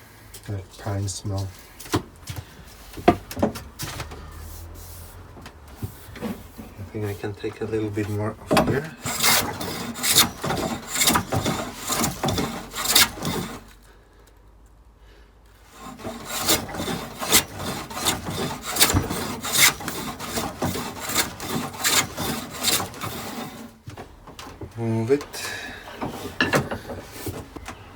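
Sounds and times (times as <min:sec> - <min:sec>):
hand plane shaving wood: 0:05.8 - 0:13.8, 0:15.7 - 0:27.9.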